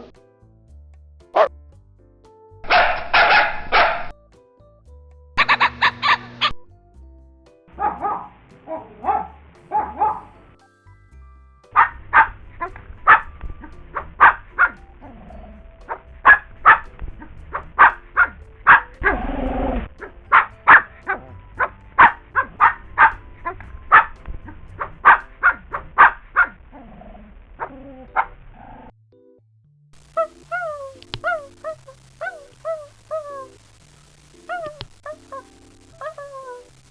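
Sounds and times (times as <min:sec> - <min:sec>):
dog barking: 0:02.7 - 0:04.1, 0:07.8 - 0:10.4, 0:11.8 - 0:12.4, 0:20.0 - 0:24.2, 0:24.8 - 0:26.6.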